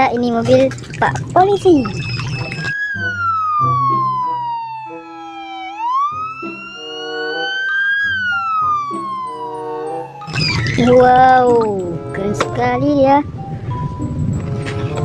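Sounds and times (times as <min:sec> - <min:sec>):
stepping electronic note tune: 0:01.4 - 0:15.0
police siren wailing: 0:01.6 - 0:12.4.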